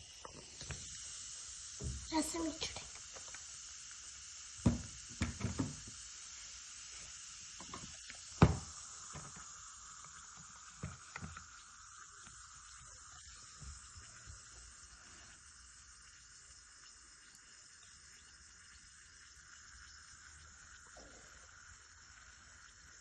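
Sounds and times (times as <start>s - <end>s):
steady high hiss: 0.0s - 23.0s.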